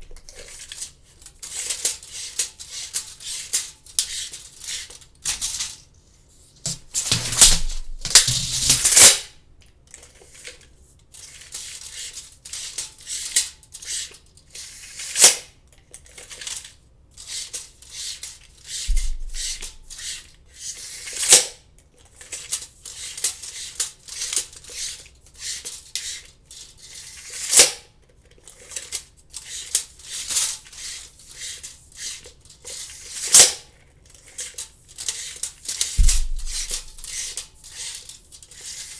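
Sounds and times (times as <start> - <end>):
tape measure blade rattling: 6.7 - 9.3, 34.4 - 38.2
tape measure blade snapping back: 6.7 - 9.3, 36.0 - 37.4.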